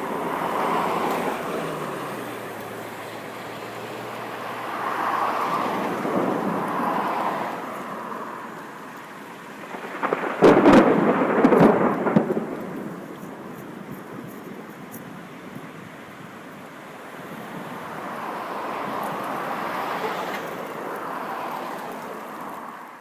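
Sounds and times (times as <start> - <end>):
thunder rumbling: 5.4 - 16.2
crackling thunder peal: 5.6 - 14.9.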